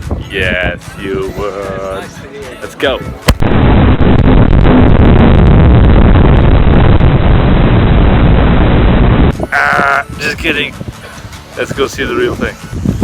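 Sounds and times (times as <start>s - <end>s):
wind noise: 0.0s - 2.2s, 2.9s - 13.0s.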